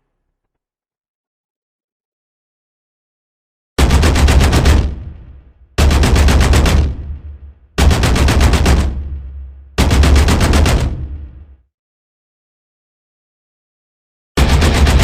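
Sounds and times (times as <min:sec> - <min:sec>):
machine-gun bursts: 0:03.8 - 0:05.0, 0:05.8 - 0:07.0, 0:07.8 - 0:09.0, 0:09.8 - 0:11.0, 0:14.4 - 0:15.0.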